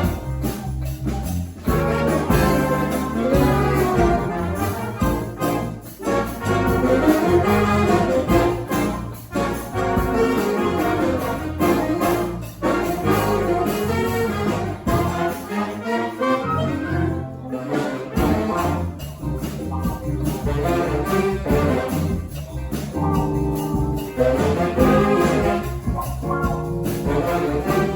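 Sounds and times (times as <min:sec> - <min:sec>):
brass band playing: 0:00.0 - 0:27.9.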